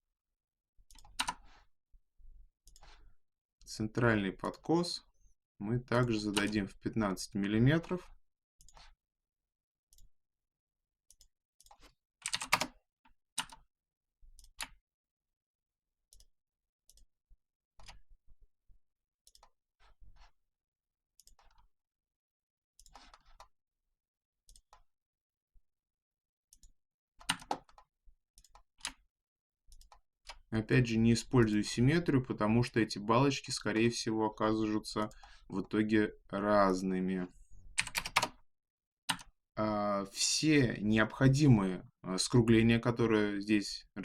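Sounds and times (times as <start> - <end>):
computer mouse clicks: 2.7 - 3.0, 8.6 - 8.9, 24.5 - 24.8, 26.5 - 29.0, 29.7 - 30.4
keyboard keys clicking: 11.1 - 12.7, 37.8 - 38.4.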